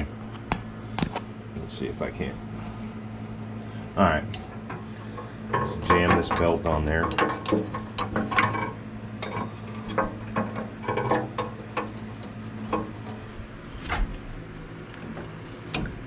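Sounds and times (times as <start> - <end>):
metallic clanks and knocks: 4.3 - 13.2.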